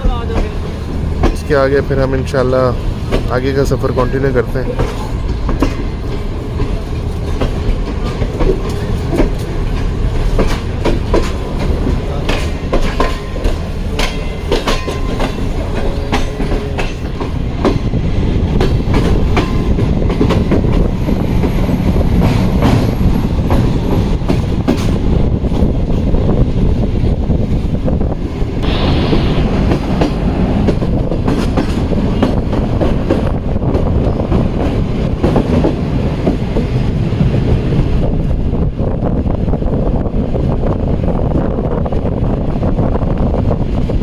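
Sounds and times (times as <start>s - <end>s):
train wheels rumbling on track: 0.0s - 44.0s
wheels clacking on rail joints: 4.6s - 25.9s, 29.7s - 37.3s.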